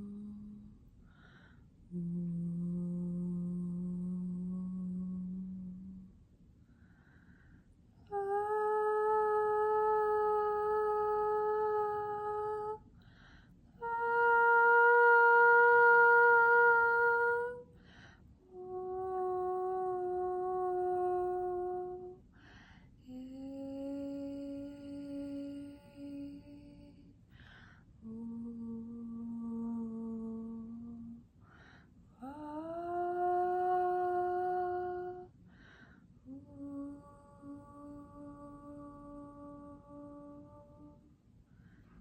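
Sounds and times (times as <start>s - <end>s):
woman toning long held notes: 8.1s - 22.3s.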